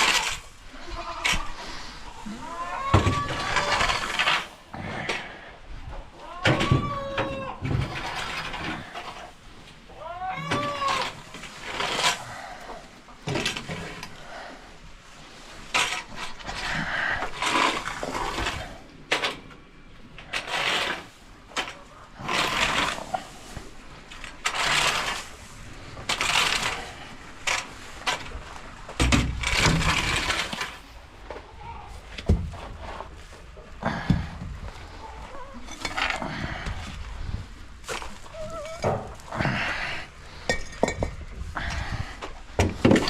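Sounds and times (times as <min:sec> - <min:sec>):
scraper scraping manure: 0:00.0 - 0:05.3, 0:10.5 - 0:14.3, 0:15.5 - 0:19.3, 0:20.2 - 0:40.4.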